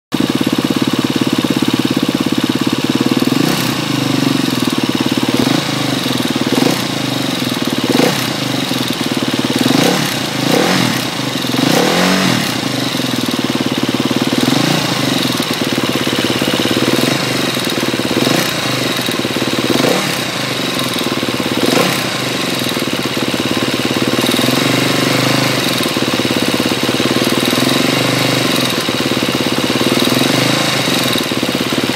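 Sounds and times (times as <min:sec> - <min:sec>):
motorcycle engine idling with ticking: 0:00.1 - 0:31.9
engine revving blips: 0:05.2 - 0:13.3, 0:14.4 - 0:22.8.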